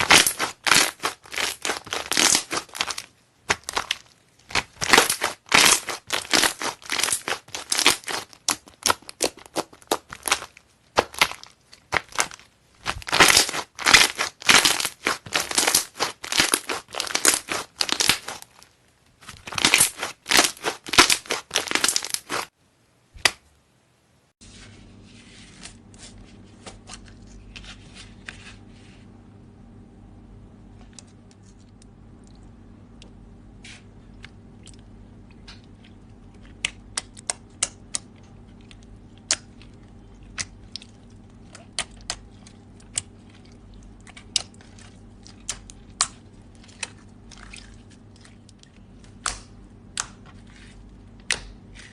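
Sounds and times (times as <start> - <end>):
slime crackling and popping: 0.0 - 18.6, 19.3 - 22.5
steady low hum: 0.0 - 51.9.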